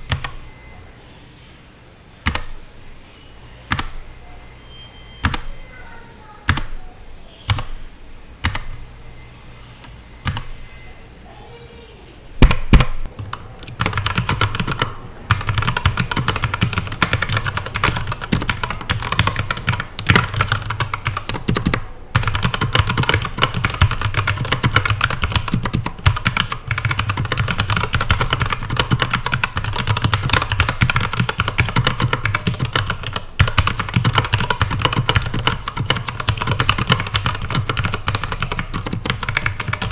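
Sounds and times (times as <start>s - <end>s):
mechanical keyboard typing: 0.1s - 0.4s, 2.2s - 2.5s, 3.7s - 4.0s, 7.5s - 7.8s, 8.4s - 8.8s, 10.2s - 10.5s, 12.4s - 39.9s.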